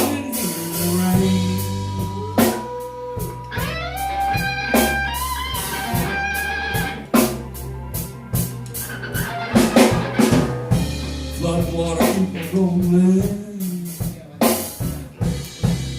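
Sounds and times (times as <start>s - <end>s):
person singing: 0.0s - 6.9s, 11.2s - 14.2s
blues band playing: 0.0s - 15.9s
electric guitar bent notes: 0.0s - 15.9s.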